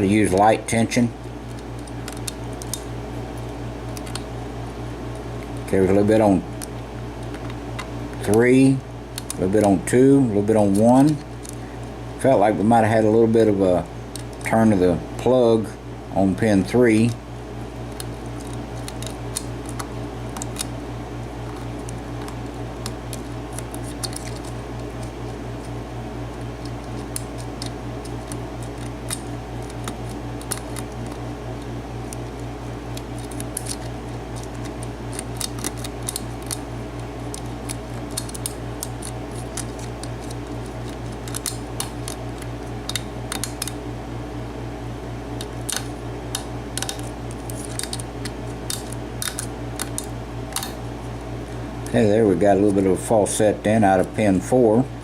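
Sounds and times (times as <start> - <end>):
low electrical hum: 0.0 - 55.0
lock pick clicking on pins: 45.4 - 50.8.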